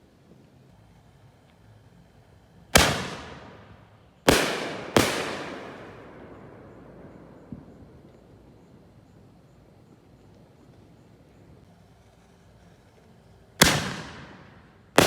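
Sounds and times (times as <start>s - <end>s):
firework bangs echoing: 2.8s - 8.7s, 13.6s - 15.0s.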